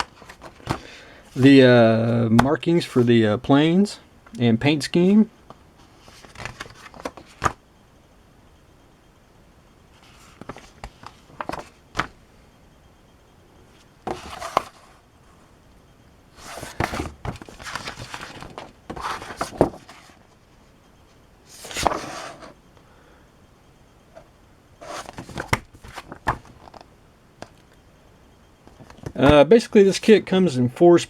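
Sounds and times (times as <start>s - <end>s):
paper or plastic rustling: 16.4s - 20.3s, 24.8s - 26.8s.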